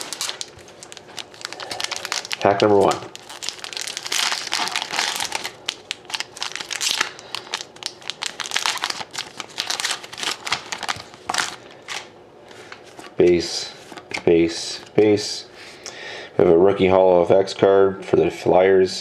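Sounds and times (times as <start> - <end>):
foil wrapper tearing and crinkling: 0.0 - 12.1.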